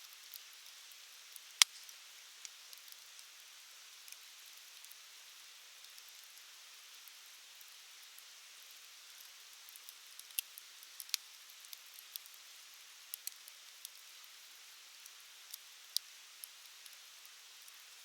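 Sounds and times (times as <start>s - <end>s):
faint steady hiss: 0.0s - 18.0s
campfire crackling: 1.4s - 2.9s, 9.7s - 12.3s, 13.1s - 14.0s
fire pops and snaps: 1.4s - 2.9s, 10.2s - 12.3s, 13.1s - 13.4s.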